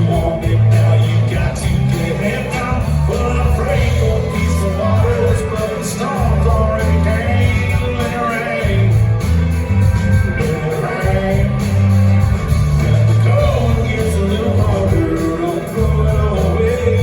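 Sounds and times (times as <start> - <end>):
live country-rock band: 0.0 - 17.0
pulsing bass line: 0.0 - 17.0
steady drum beats: 0.0 - 17.0.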